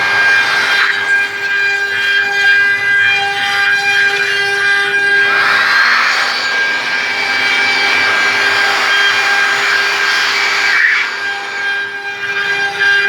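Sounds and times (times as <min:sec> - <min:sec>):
machine spindle whine: 0:00.0 - 0:13.0
rough cutting noise: 0:03.2 - 0:12.8.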